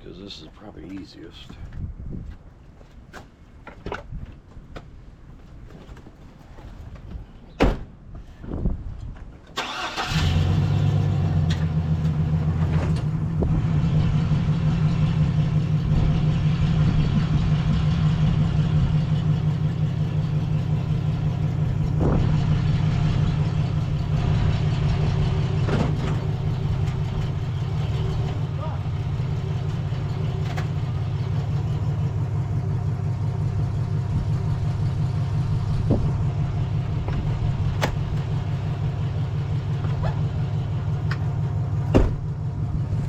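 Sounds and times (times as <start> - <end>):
vehicle engine starting and idling: 9.5 - 43.0.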